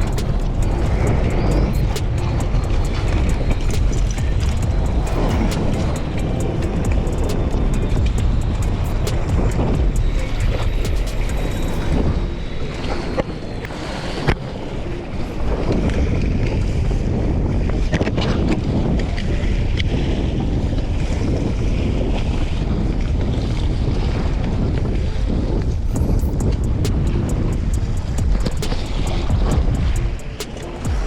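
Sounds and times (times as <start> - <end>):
sharp click: 0.0 - 12.2, 26.0 - 31.0
sea waves: 0.0 - 25.9
wind buffeting microphone: 0.0 - 31.0.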